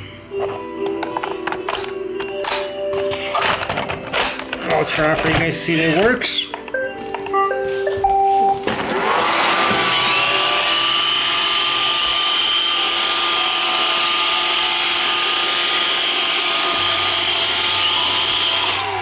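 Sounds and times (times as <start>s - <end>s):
robot vacuum motor whine: 8.7s - 19.0s.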